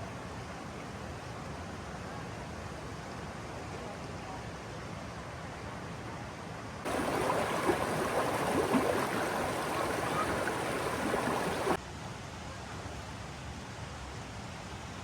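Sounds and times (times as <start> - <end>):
steady hiss: 6.9 - 11.8
water rushing over cascade: 6.9 - 11.8.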